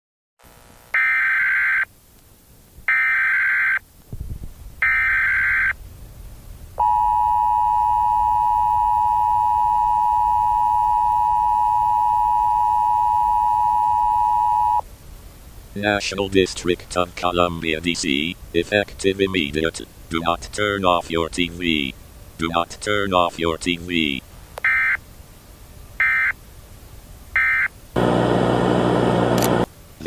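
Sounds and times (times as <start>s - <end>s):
two-tone attention signal: 6.8s - 14.8s.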